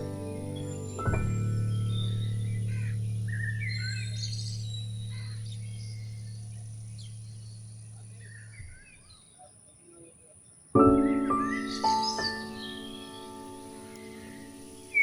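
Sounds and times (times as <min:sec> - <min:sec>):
low held music note: 0:00.0 - 0:08.9
small birds chirping: 0:00.0 - 0:15.0.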